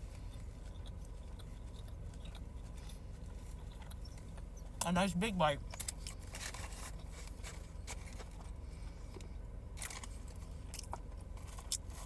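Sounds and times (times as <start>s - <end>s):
person chewing crunchy food: 0.0s - 4.8s, 9.8s - 12.0s
low steady hum: 0.0s - 12.0s.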